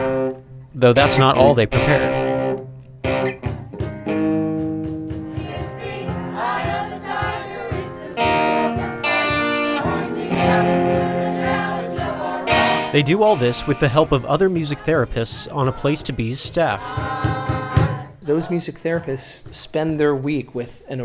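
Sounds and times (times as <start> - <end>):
strummed guitar: 0.0 - 18.2
small choir singing: 5.3 - 18.7.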